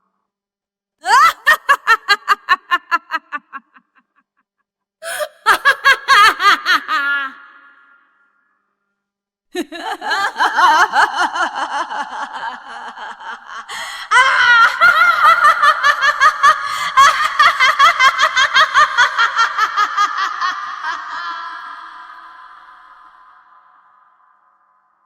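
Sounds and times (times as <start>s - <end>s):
woman cackling evil laugh: 1.0s - 4.2s, 5.0s - 7.9s, 9.6s - 22.4s.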